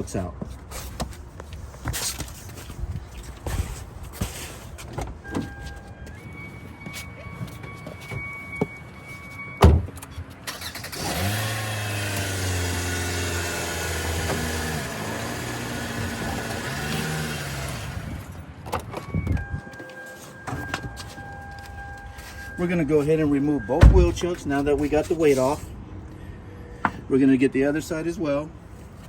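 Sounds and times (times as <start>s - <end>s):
vehicle warning chime: 5.2s - 10.3s, 18.8s - 25.4s
car door shutting: 9.6s - 10.1s, 23.6s - 24.4s
car engine starting and running: 9.6s - 19.6s, 21.2s - 25.0s.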